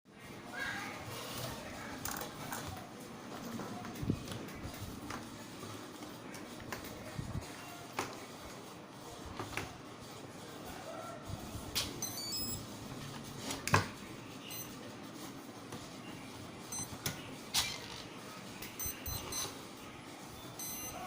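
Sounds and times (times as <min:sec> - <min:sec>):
short high electronic beeps: 0:12.0 - 0:12.6, 0:14.5 - 0:14.8, 0:16.7 - 0:17.0, 0:18.8 - 0:19.6, 0:20.6 - 0:21.0.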